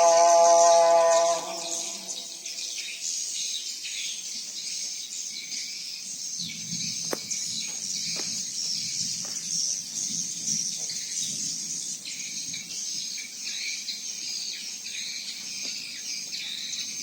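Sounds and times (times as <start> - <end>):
insects and birds chirping: 0.0 - 17.0.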